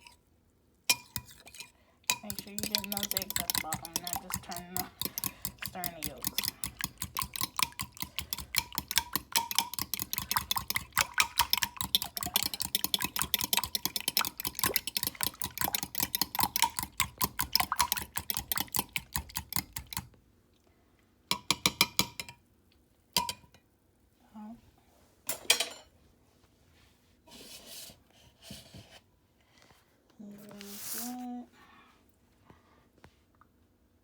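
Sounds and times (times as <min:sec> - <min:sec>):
whisk beating in a bowl: 0:00.9 - 0:20.1.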